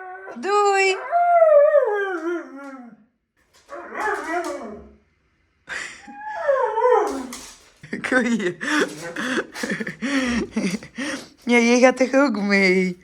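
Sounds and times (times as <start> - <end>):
dog howling: 0.0 - 3.0, 3.7 - 5.0, 6.1 - 7.7.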